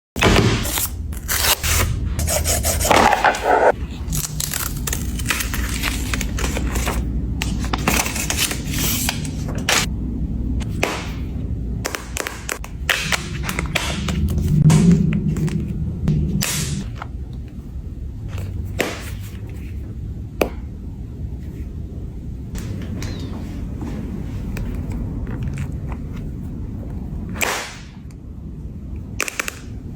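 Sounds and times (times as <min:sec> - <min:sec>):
low steady rumble: 0:00.8 - 0:29.9
cardboard and plastic scraping: 0:02.8 - 0:04.2.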